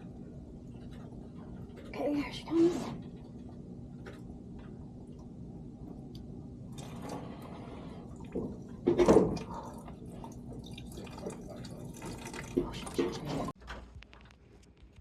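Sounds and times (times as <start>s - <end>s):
low hum: 0.0s - 15.0s
water dripping and splashing: 4.1s - 13.6s.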